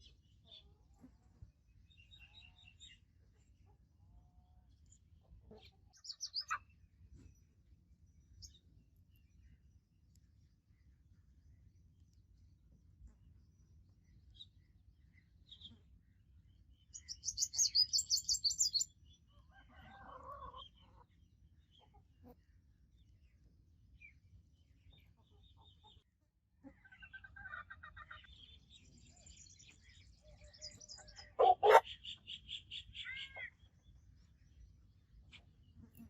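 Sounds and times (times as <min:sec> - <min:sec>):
bird chirping trill: 0:16.9 - 0:18.9, 0:27.9 - 0:33.9
quick pulsed clucks: 0:31.4 - 0:31.9.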